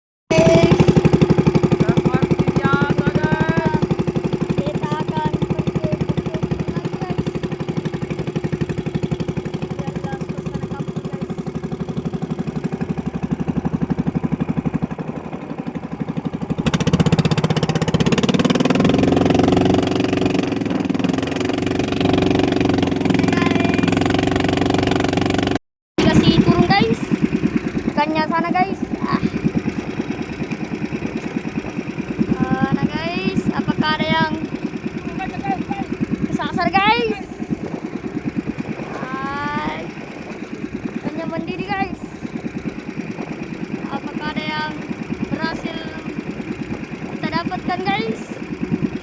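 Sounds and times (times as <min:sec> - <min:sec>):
boat engine running: 0:00.3 - 0:49.0.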